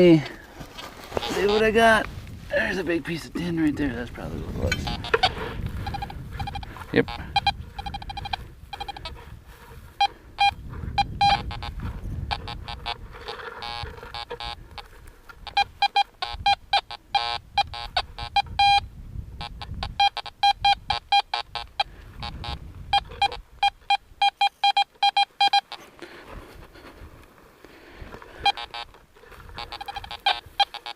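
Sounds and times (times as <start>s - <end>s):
metal detector beeps and chirps: 4.6s - 9.2s, 10.0s - 25.9s, 28.4s - 30.9s.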